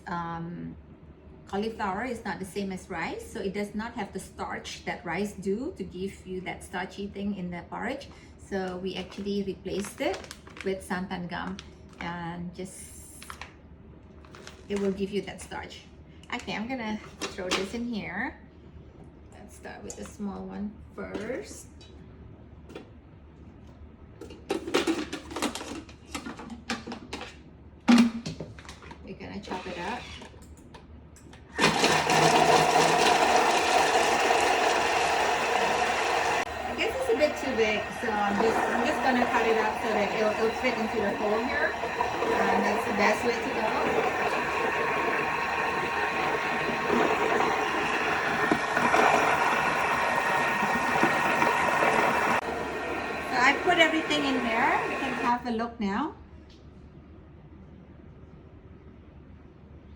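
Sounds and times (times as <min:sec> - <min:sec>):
food processor blades chopping: 0:31.6 - 0:55.3.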